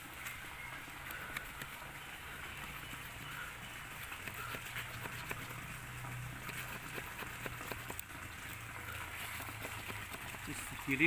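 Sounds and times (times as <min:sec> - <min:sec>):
saw rasping through wood: 0:03.8 - 0:11.0.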